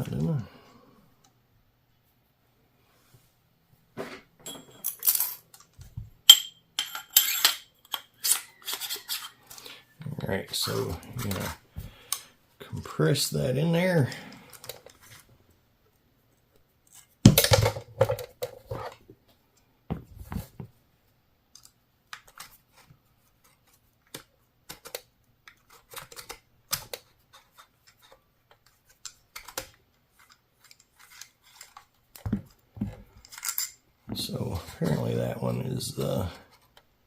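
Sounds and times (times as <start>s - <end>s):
metal parts clicking and clinking: 4.4s - 9.4s, 33.2s - 33.8s.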